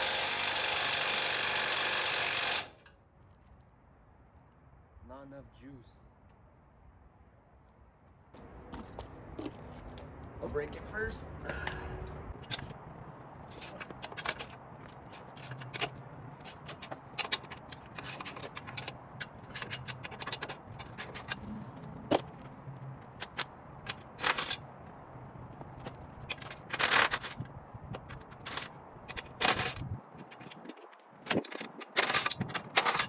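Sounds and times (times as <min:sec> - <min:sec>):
hand tools clicking and clanking: 0:11.3 - 0:24.9, 0:25.5 - 0:33.0.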